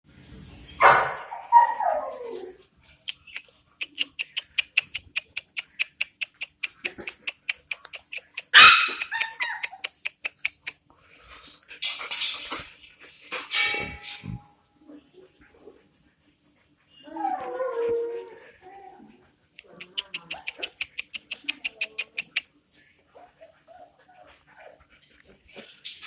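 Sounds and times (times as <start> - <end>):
puppies yelping and barking: 3.2 - 10.7, 19.8 - 22.4.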